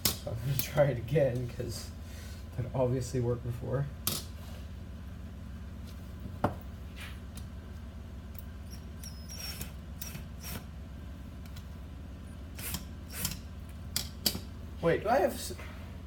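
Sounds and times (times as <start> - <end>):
steady low hum: 0.0 - 16.0
screwdriver clicking and scraping: 12.6 - 13.4.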